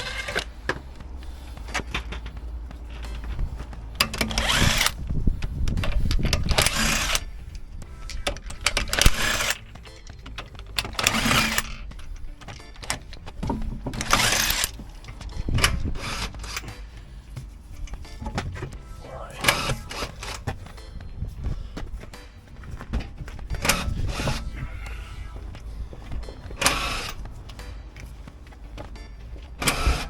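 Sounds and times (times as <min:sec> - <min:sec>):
impact wrench rattling bursts: 0:03.9 - 0:05.0, 0:05.8 - 0:07.3, 0:08.0 - 0:11.9, 0:12.5 - 0:16.8, 0:26.5 - 0:27.3.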